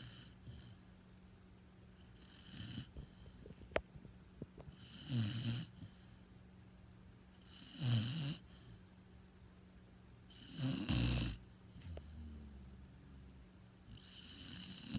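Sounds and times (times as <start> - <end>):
dog snoring: 0.0 - 0.9, 2.0 - 3.6, 4.7 - 6.2, 7.4 - 8.8, 10.3 - 14.9.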